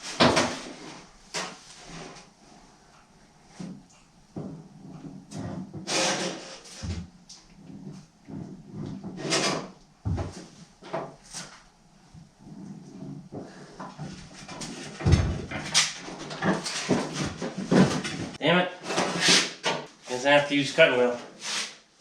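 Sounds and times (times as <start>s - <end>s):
sharp knocks and dull thumps: 3.6s - 5.9s, 10.0s - 11.2s, 13.3s - 18.4s
scraping and rubbing sheet metal: 4.8s - 7.0s, 7.6s - 9.8s, 12.4s - 20.2s.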